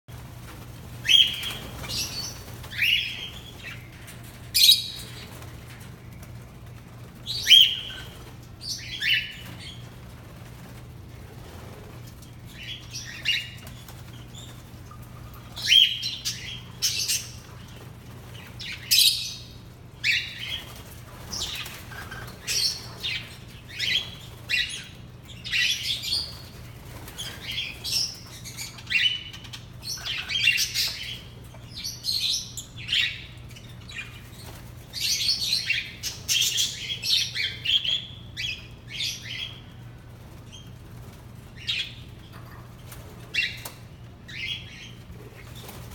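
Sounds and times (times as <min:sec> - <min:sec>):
parrots chirping and calling: 0:12.6 - 0:17.7, 0:18.4 - 0:39.6.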